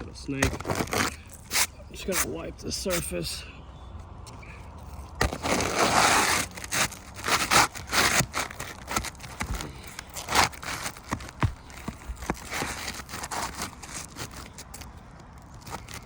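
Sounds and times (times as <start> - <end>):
shingle clicks and crackles: 0.3 - 1.6, 4.8 - 16.0
shingles brushed and scraped: 0.4 - 3.2, 4.8 - 16.0.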